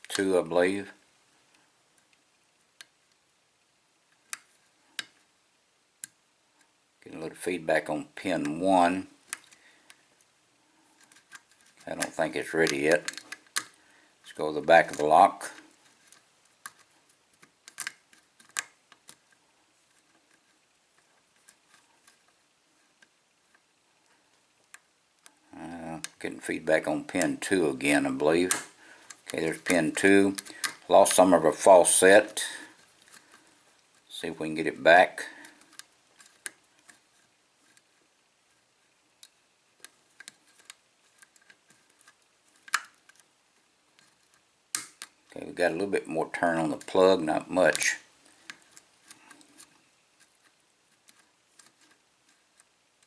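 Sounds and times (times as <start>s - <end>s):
lock pick clicking in a lock: 44.8s - 45.2s.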